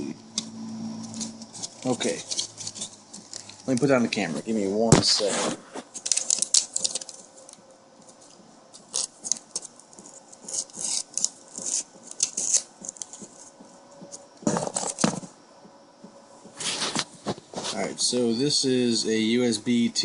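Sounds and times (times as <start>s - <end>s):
packaging rustling: 1.1s - 15.3s
packaging clatter: 5.0s - 15.3s.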